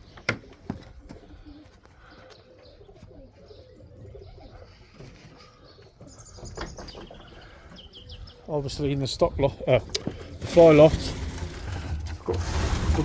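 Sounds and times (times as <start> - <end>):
pigeons cooing: 0.0 - 8.8.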